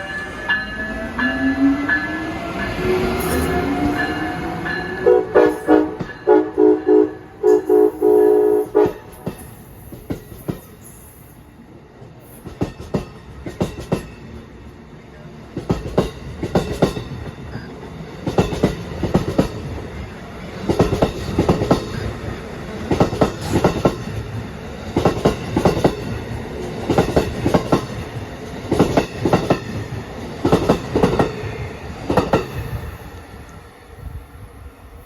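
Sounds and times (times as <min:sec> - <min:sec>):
train wheels clacking over rail joints: 0:12.4 - 0:14.5, 0:15.5 - 0:19.9, 0:20.6 - 0:22.2, 0:22.8 - 0:32.6.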